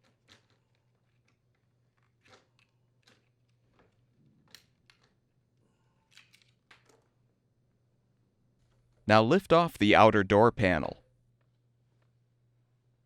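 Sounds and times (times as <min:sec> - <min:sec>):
faint hum: 0:09.1 - 0:11.0.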